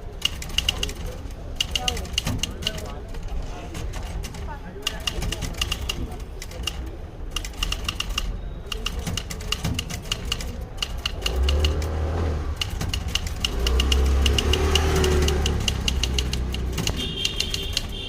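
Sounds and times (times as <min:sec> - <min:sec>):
typewriter keys clacking: 0:00.1 - 0:03.0, 0:03.8 - 0:06.8, 0:07.4 - 0:11.9, 0:12.6 - 0:18.0
engine rumbling: 0:10.7 - 0:17.3.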